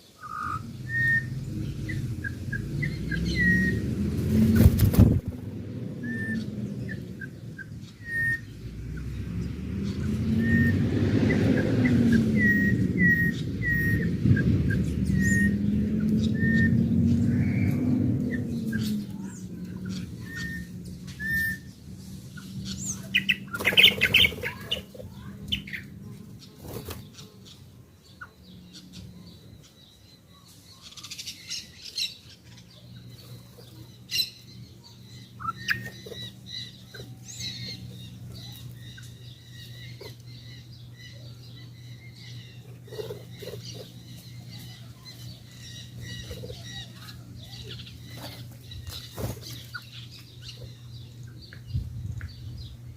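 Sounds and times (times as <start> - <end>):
bird chirps and calls: 0.0 - 52.9
steady low hum: 0.0 - 52.9
wings flapping: 4.0 - 5.5, 23.3 - 25.2, 26.6 - 27.3, 48.2 - 49.8.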